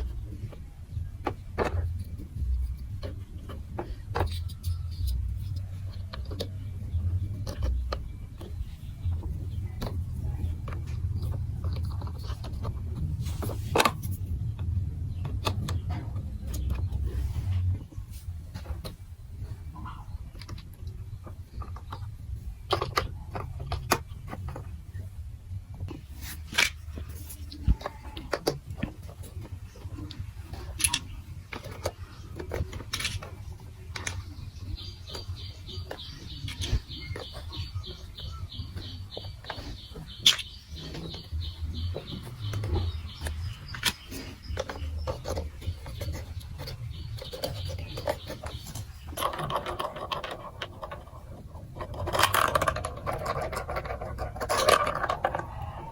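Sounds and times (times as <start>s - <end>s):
low rolling rumble: 0.0s - 55.9s
marbles clicking and clacking: 51.8s - 55.9s.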